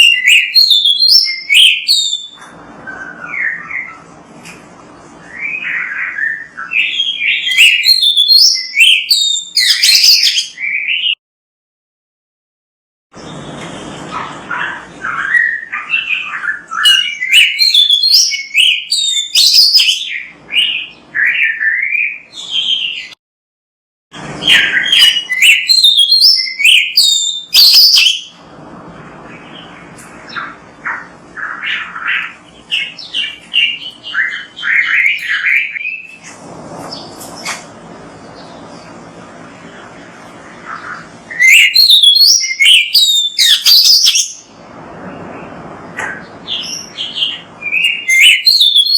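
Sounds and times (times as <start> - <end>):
magpie-robin singing: 0.0 - 4.1, 5.1 - 11.2, 14.1 - 23.2, 24.4 - 28.4, 29.3 - 36.2, 39.7 - 44.5, 46.0 - 48.9.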